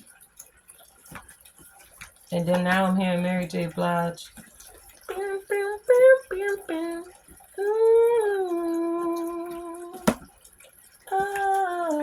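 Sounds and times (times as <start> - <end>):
woman humming: 5.1 - 10.2, 11.1 - 12.0.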